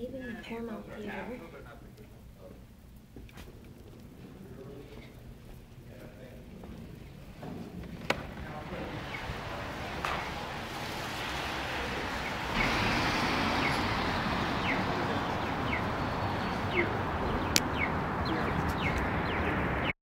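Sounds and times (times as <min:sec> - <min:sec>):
traffic rushing: 0:06.8 - 0:20.0
bird chirping: 0:12.2 - 0:19.9.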